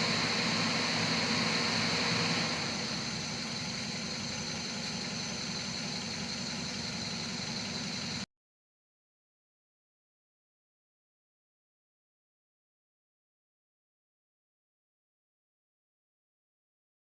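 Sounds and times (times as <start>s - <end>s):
car engine idling: 0.0s - 8.2s
high whine: 0.0s - 8.2s.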